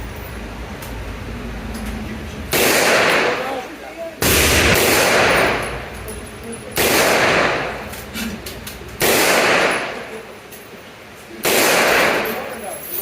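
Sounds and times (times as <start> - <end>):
gunshots: 2.5 - 5.9, 6.8 - 7.9, 9.0 - 10.3, 11.4 - 12.5.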